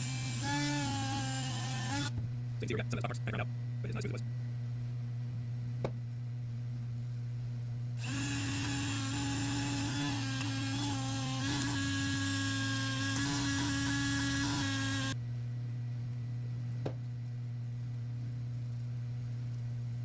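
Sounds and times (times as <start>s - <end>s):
rotary tool high-pitched whine: 0.0s - 2.1s, 8.0s - 15.2s
low steady hum: 0.0s - 20.0s.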